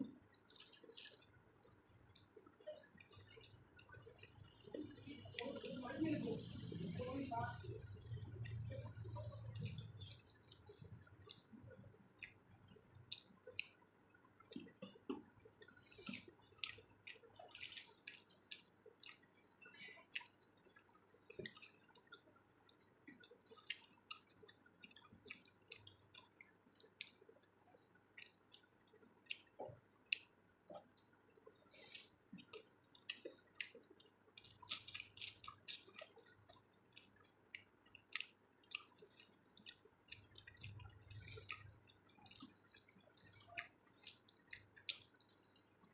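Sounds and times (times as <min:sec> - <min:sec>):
person chewing: 0:00.1 - 0:01.3, 0:07.8 - 0:45.9
wet mouth clicks and smacks: 0:22.8 - 0:27.4, 0:28.1 - 0:45.9.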